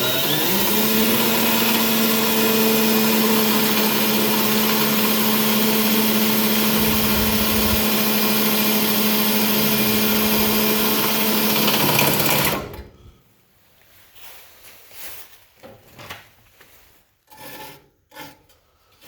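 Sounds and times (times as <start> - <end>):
power tool running on metal: 0.0 - 12.8.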